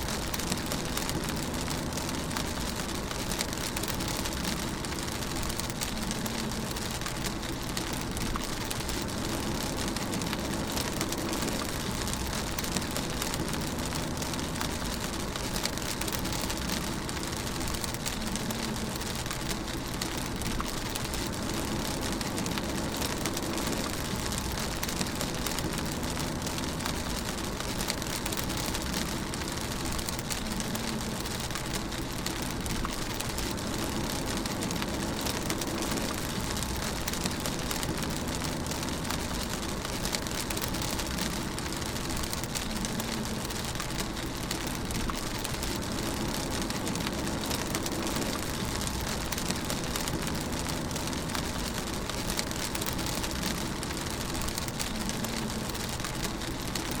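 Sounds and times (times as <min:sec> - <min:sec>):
engine and road noise: 0:00.0 - 0:57.0
rain pattering on a car: 0:00.0 - 0:57.0.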